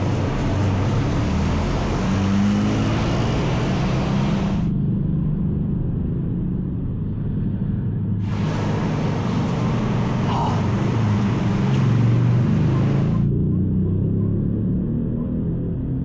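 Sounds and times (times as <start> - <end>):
vehicle engine revving: 0.0 - 4.8, 8.2 - 16.0.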